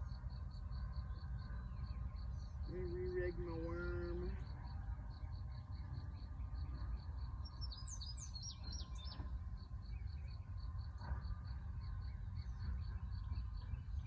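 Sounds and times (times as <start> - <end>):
bird chirping: 0.0 - 14.0
insect chirping: 0.0 - 14.0.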